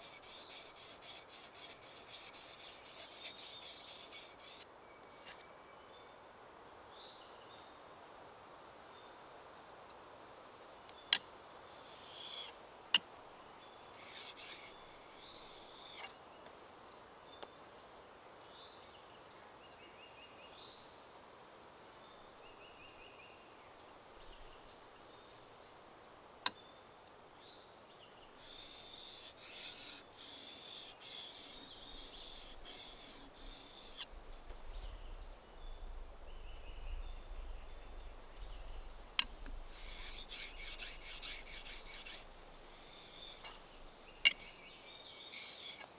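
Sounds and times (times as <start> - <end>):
hand tool rasping wood: 0.0 - 4.6, 14.0 - 16.0, 28.4 - 34.1, 39.8 - 43.6, 45.3 - 45.9
small birds chirping: 0.0 - 4.6, 27.4 - 45.9.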